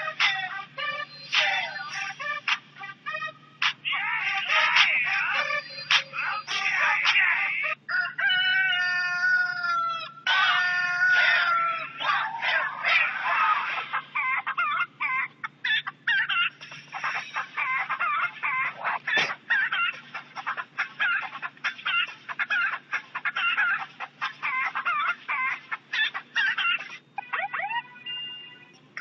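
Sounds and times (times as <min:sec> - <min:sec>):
rooster crowing: 0:07.9 - 0:13.8
chickens clucking: 0:11.1 - 0:27.1.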